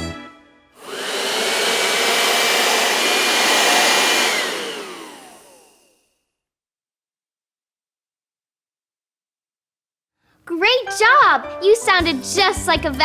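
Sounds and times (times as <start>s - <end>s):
vacuum cleaner running: 0.8s - 6.2s.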